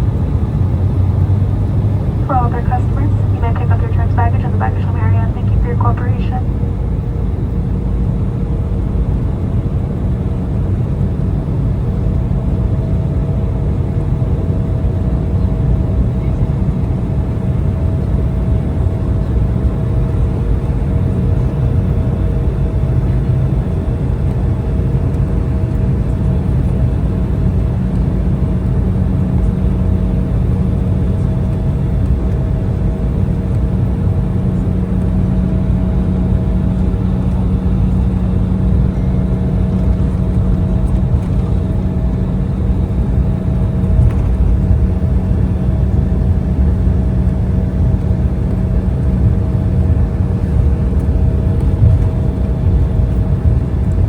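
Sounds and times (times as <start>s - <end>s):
jet cabin rumble: 0.0s - 54.0s
steady hums: 1.6s - 7.8s.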